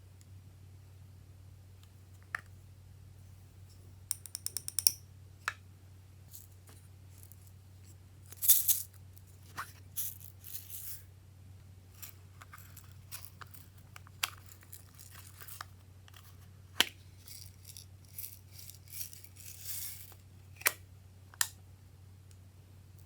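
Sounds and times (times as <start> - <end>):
steady low hum: 0.0 - 23.0
rustling scrapes: 12.0 - 20.2
small hard pieces clicking: 17.2 - 20.2.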